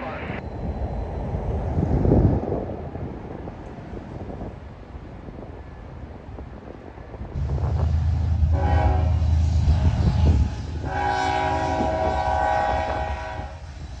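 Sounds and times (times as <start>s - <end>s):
locomotive air horn blasts: 7.7s - 13.8s.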